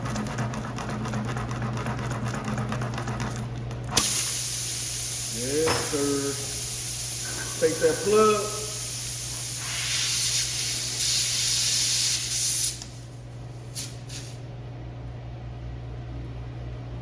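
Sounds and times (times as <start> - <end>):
air hissing out of tire: 4.0 - 14.4
short puffs of escaping air: 4.0 - 14.4.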